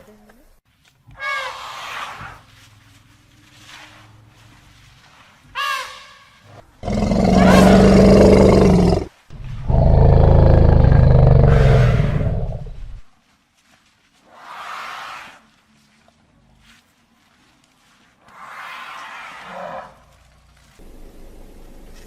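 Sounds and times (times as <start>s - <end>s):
elephant calling: 6.8s - 13.0s
elephant roaring: 6.8s - 13.0s.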